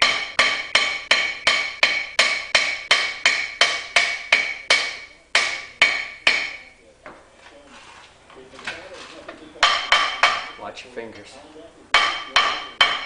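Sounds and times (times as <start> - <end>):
hammer striking ringing metal rotor: 0.0 - 6.7, 12.0 - 13.0.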